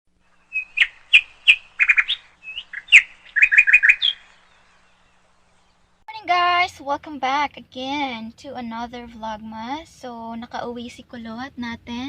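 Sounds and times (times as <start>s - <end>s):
bird chirping and trilling: 0.2s - 6.0s.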